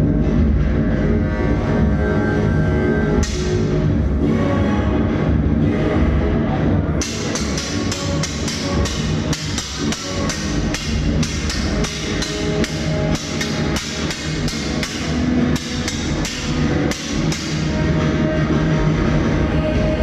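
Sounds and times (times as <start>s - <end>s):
sharp percussion strikes: 3.2s - 4.0s, 7.0s - 18.4s.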